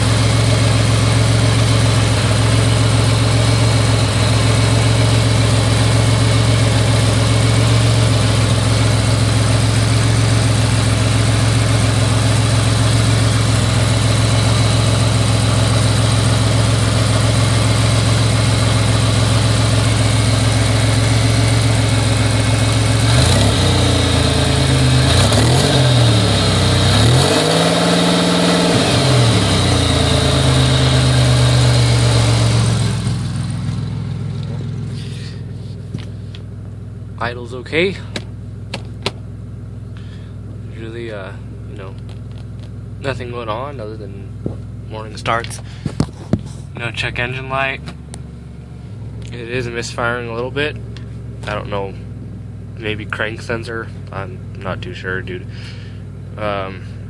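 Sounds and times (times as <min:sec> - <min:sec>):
car engine idling and revving: 0:00.0 - 0:57.0.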